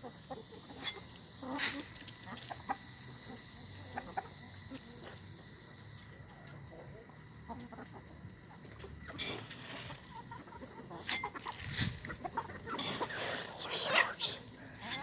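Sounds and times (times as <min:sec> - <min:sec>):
chickens clucking: 0:00.0 - 0:15.0.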